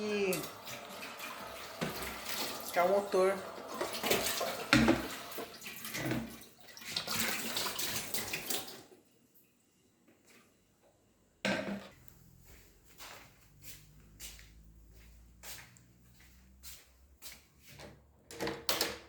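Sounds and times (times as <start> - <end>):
refrigerator rushing water-like noise: 0.0 - 8.9.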